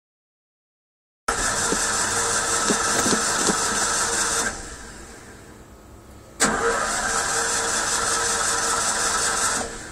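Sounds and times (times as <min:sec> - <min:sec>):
starter motor cranking engine: 0:01.3 - 0:04.8, 0:06.4 - 0:09.9.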